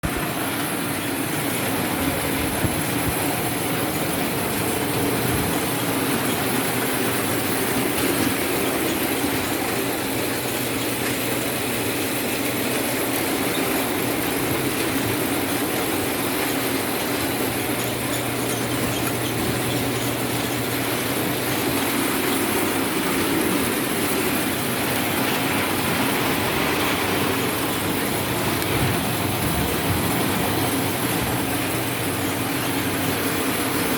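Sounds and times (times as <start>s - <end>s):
rollers and conveyor rattling: 0.0s - 33.9s
low motor hum: 16.6s - 33.9s.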